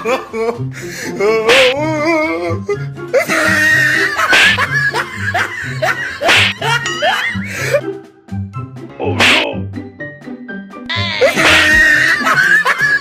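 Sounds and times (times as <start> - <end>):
laughter: 0.0 - 0.6, 3.2 - 7.4, 11.2 - 13.0
comedic background music: 0.0 - 13.0.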